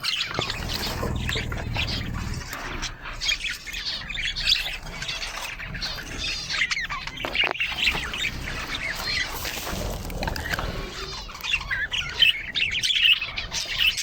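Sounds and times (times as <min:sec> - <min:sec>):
cage birds chirping and squawking: 0:00.0 - 0:14.0.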